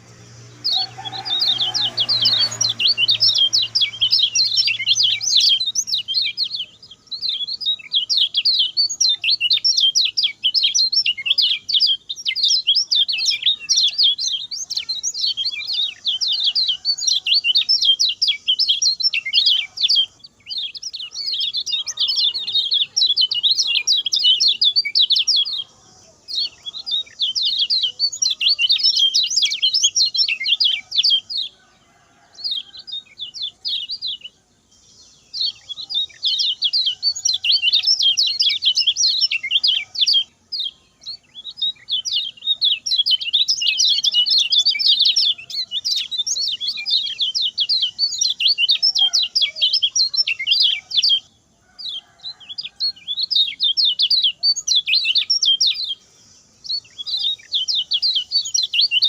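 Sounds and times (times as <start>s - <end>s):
bird chattering song: 0.0s - 59.0s.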